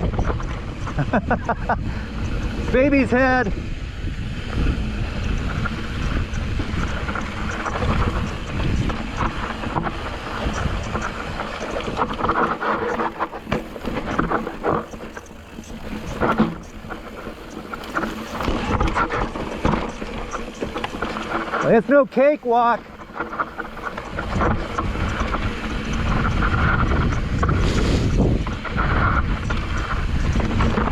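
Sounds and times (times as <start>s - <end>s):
wind over microphone: 0.0s - 30.9s
bike knocks and rattles: 4.5s - 30.9s
tyres crunching over rock: 6.7s - 25.4s.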